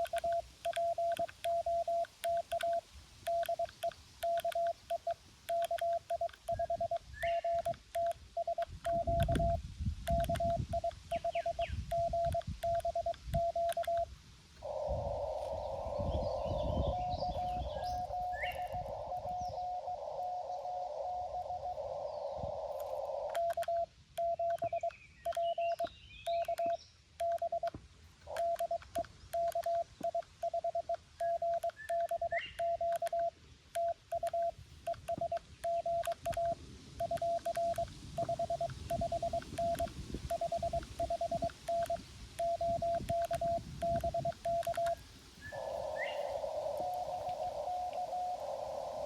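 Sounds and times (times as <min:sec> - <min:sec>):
morse code tone: 0:00.0 - 0:14.1, 0:23.3 - 0:27.7, 0:28.3 - 0:45.0
receiver hiss: 0:00.0 - 0:49.0.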